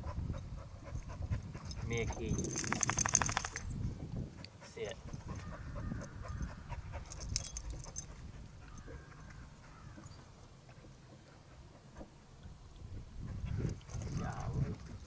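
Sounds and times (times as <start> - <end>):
metal jingle: 1.7 - 3.7, 7.1 - 8.1.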